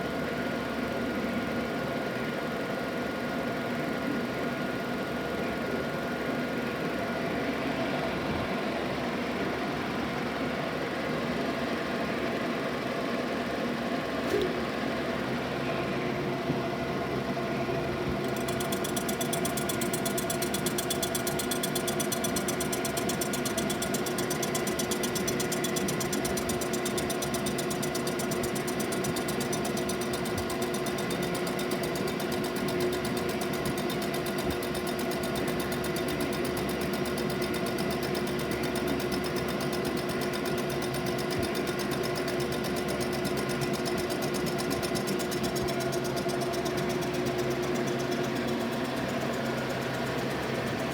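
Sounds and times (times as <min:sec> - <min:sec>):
milling machine humming and whining: 0:14.0 - 0:50.9
fine fast rattle: 0:18.2 - 0:50.9.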